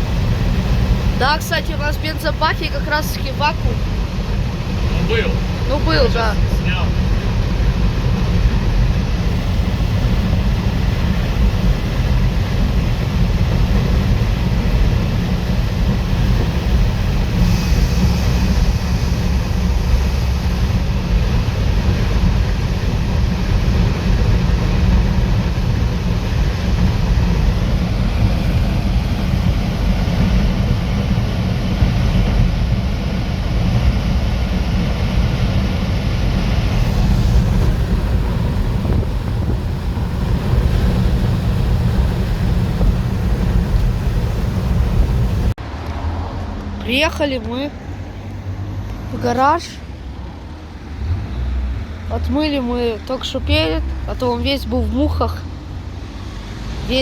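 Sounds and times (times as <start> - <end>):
high hiss: 0.0 - 3.3, 9.3 - 45.6
road noise: 0.0 - 57.0
truck engine droning: 0.0 - 57.0.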